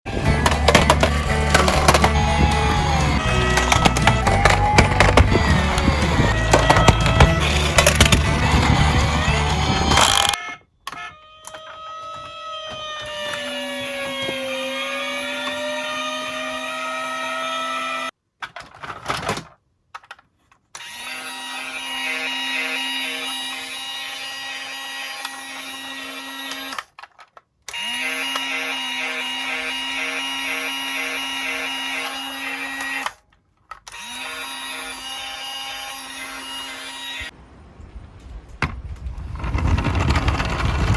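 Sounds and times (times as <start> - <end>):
small motor whirring: 0.2 - 10.4, 12.3 - 18.1, 27.7 - 33.2
pulsing electronic siren: 1.8 - 18.1.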